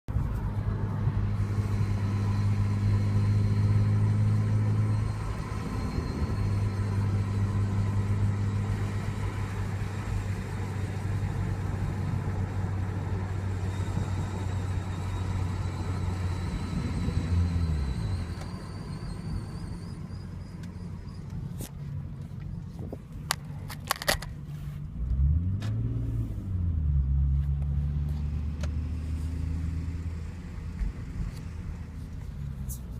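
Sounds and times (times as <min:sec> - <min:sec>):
car engine pulling through gears: 0:00.1 - 0:32.9
faint high-pitched squeal: 0:01.4 - 0:09.9, 0:13.4 - 0:22.8.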